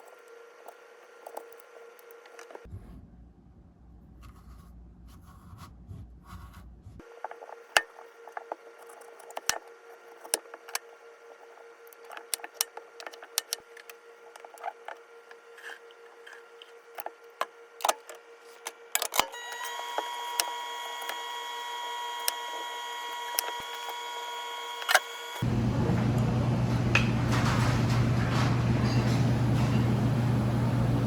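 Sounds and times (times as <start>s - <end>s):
steady hum: 5.8s - 31.0s.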